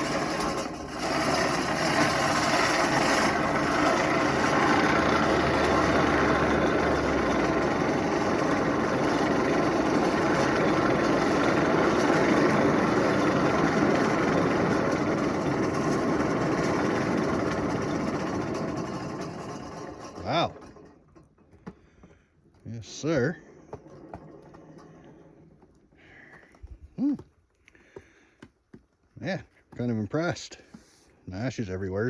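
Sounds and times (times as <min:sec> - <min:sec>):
forge blower whirring: 0:00.0 - 0:20.9.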